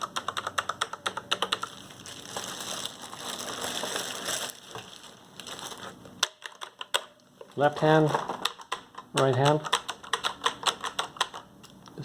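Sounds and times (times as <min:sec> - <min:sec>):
mechanical keyboard clicks: 0:00.0 - 0:01.7, 0:08.4 - 0:11.5
keyboard crinkling and rubbing: 0:00.1 - 0:06.8.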